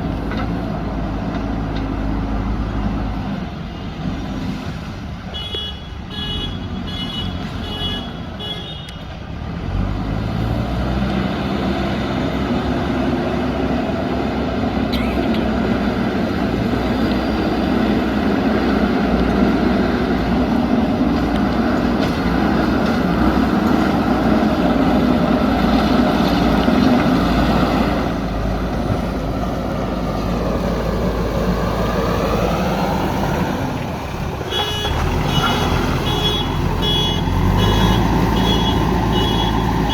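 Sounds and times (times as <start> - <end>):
diesel engine working under load: 0.0 - 5.6, 9.0 - 39.9.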